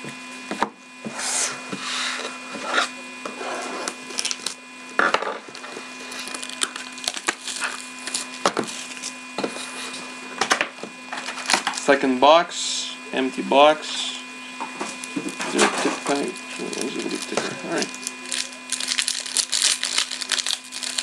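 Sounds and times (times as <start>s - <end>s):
electrical hum: 0.0s - 21.0s
cards and packs rustling: 5.6s - 10.0s, 11.1s - 12.0s, 14.9s - 21.0s.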